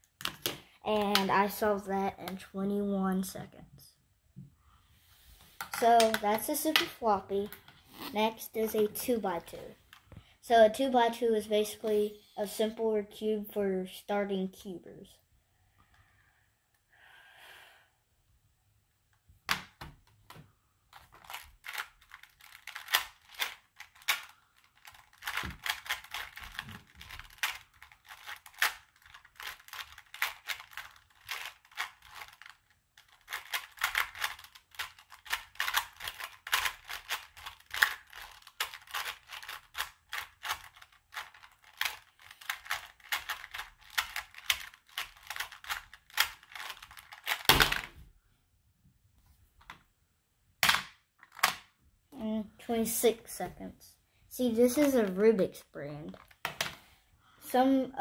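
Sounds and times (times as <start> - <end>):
plastic puzzle cube clicking: 5.6 - 6.9, 21.0 - 47.9.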